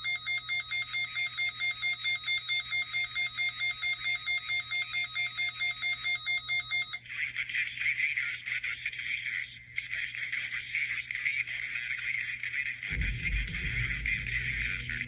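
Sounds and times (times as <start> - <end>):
warbling electronic alert alarm: 0.0 - 7.0, 12.9 - 15.0.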